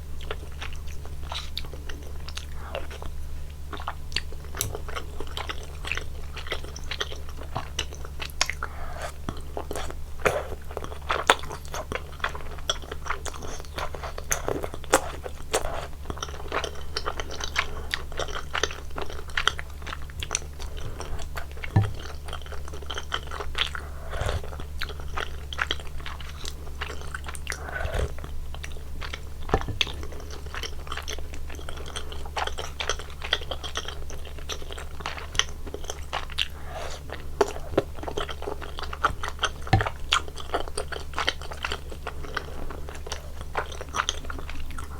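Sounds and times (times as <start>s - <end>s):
steady low hum: 0.0s - 44.9s
wet chewing and smacking: 0.1s - 44.9s
small clicks and slurps: 3.8s - 33.8s.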